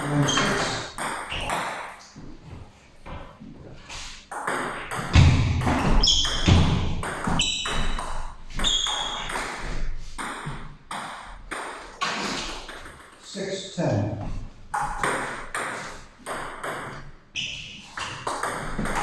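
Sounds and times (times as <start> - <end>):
short high squeaks: 0.0 - 0.8, 6.0 - 6.5, 8.6 - 9.4.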